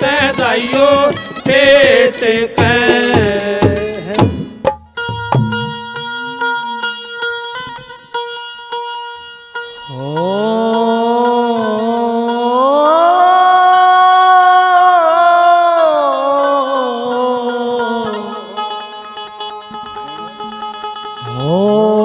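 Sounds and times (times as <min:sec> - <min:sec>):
devotional music melody: 0:04.8 - 0:22.0.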